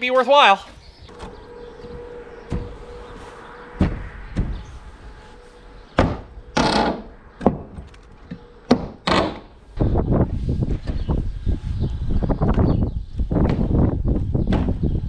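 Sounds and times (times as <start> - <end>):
wooden knocks and bangs: 3.8 - 4.6, 13.4 - 15.0.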